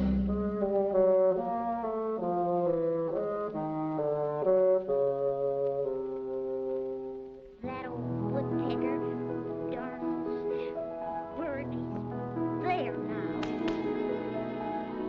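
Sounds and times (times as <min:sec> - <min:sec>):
orchestral brass chords: 0:12.6 - 0:15.0.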